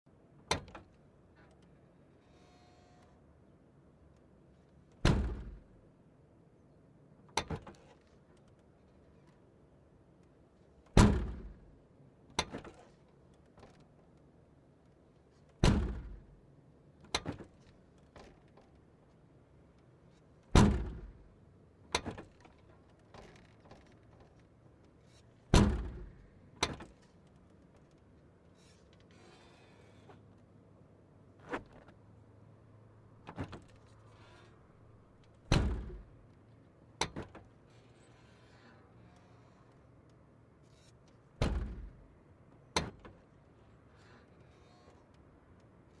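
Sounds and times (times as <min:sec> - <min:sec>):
trunk lid clunks and slams: 0:05.0 - 0:05.6, 0:11.0 - 0:11.6, 0:15.6 - 0:16.3, 0:20.6 - 0:21.2, 0:25.5 - 0:26.1, 0:35.5 - 0:36.1, 0:41.4 - 0:42.0
trunk lid slamming shut: 0:35.5 - 0:36.0, 0:41.4 - 0:42.0.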